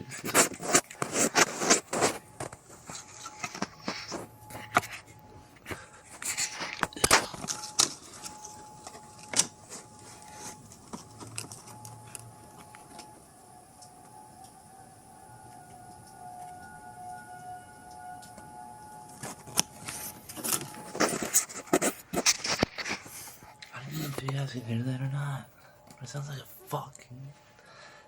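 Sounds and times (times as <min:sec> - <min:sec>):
distant warning siren: 0:00.0 - 0:28.0.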